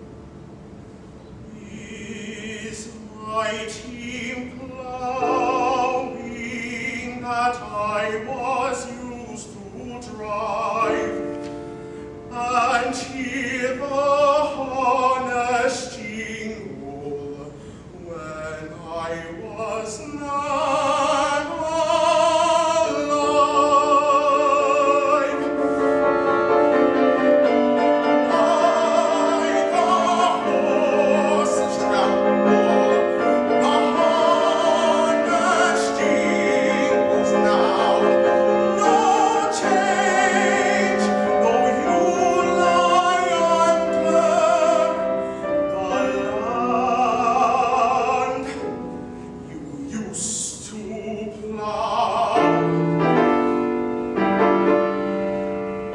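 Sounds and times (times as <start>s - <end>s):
tenor singing classical song: 0.0s - 55.9s
piano accompaniment: 3.5s - 17.2s, 19.4s - 55.9s.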